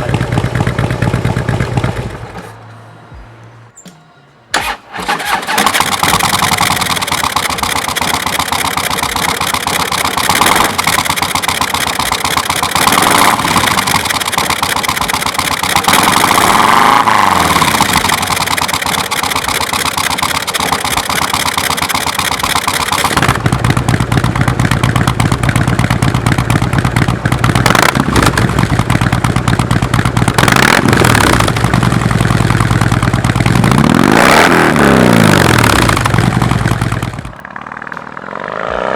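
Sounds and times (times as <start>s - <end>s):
motorcycle engine revving: 0.0s - 2.7s, 4.6s - 38.9s.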